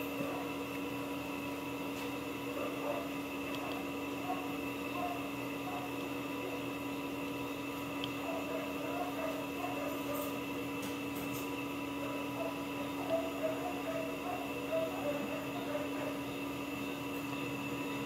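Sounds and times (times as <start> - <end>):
steady electrical hum: 0.0 - 18.0
faint voices: 12.0 - 16.7.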